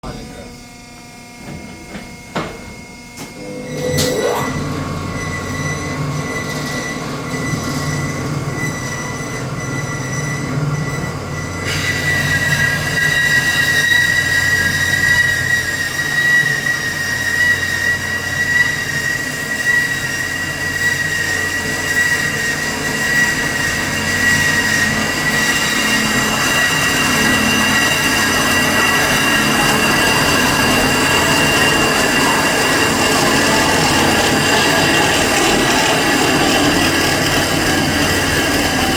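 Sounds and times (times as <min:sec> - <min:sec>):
low motor hum: 0:00.0 - 0:12.2
metallic cutting squeal: 0:03.4 - 0:38.9.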